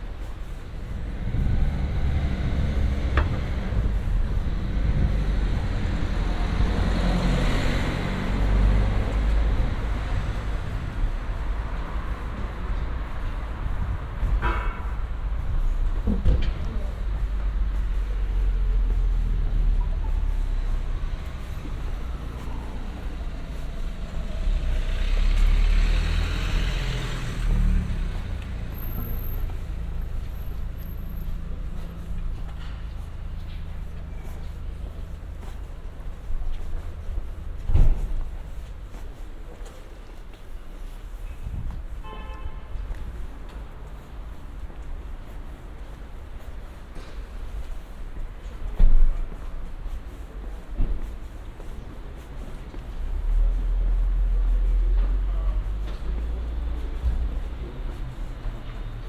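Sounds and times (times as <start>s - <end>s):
low rumble of traffic: 0.0s - 59.0s
car passing with tyre hiss: 0.1s - 16.0s, 16.8s - 59.0s
vehicle passing close by: 0.8s - 13.8s, 20.2s - 32.3s.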